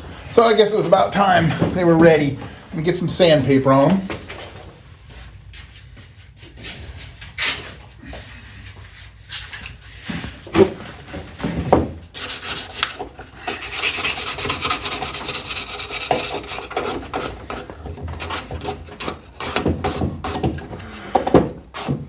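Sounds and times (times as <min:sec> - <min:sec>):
sandpaper rasping on metal: 0:12.2 - 0:20.1.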